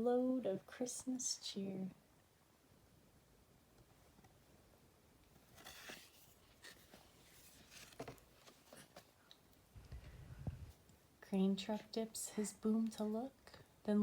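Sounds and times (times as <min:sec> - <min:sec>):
book pages rustling and turning: 0:05.3 - 0:09.2.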